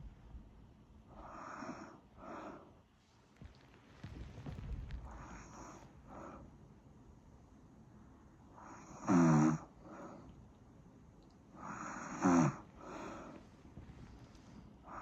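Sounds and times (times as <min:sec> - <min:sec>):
soft breath out: 0:11.6 - 0:15.0.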